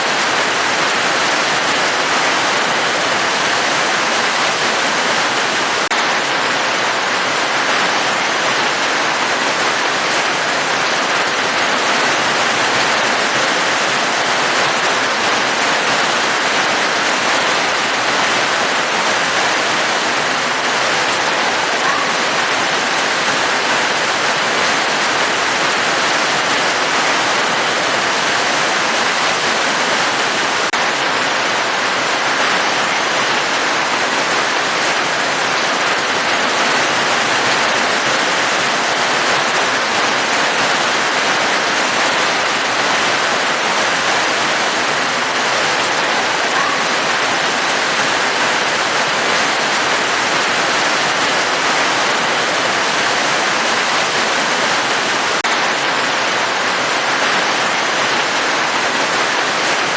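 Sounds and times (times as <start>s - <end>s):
rush of falling water: 0.0s - 59.9s.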